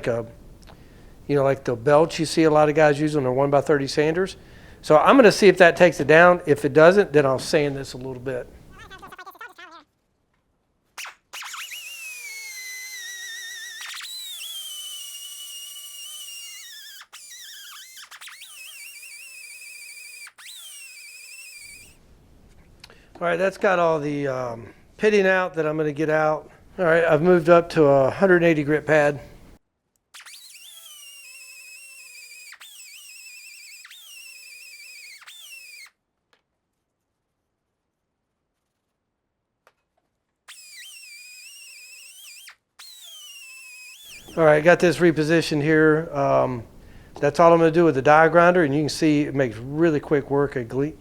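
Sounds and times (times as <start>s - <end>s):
die grinder whining on metal: 11.4s - 21.9s, 30.2s - 35.9s, 40.5s - 44.4s.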